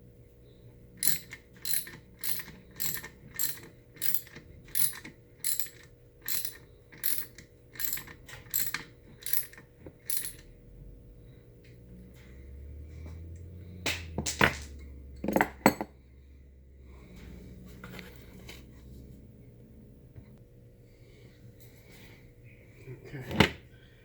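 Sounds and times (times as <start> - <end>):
ratchet wrench clicking: 1.0 - 10.4.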